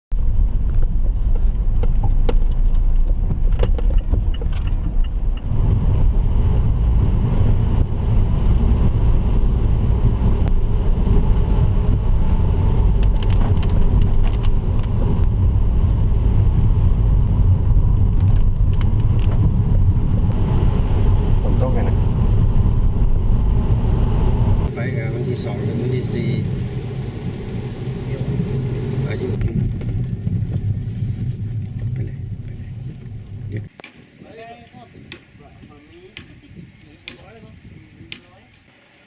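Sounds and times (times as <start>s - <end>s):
vehicle engine rumbling: 0.1s - 39.0s.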